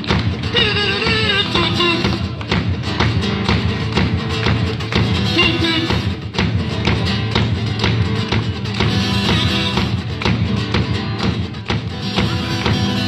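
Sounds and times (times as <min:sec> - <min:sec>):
acoustic guitar strummed: 0:00.0 - 0:13.0
person singing: 0:00.4 - 0:02.6, 0:05.3 - 0:06.0.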